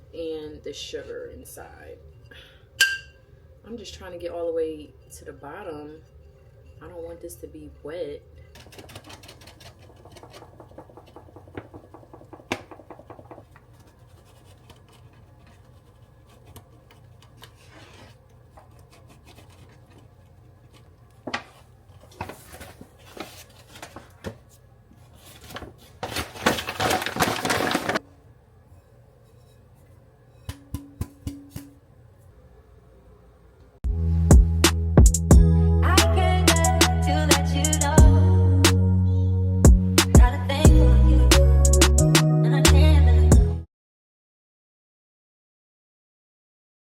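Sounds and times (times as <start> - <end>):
containers knocking and clinking: 8.5 - 14.0, 30.4 - 31.8
rubbing and scraping inside canisters: 8.5 - 24.1, 25.1 - 28.0.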